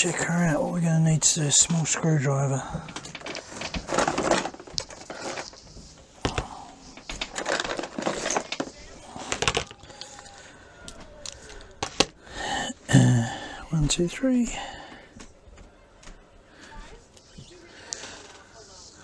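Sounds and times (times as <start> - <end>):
small objects clattering on workbench: 2.8 - 10.3.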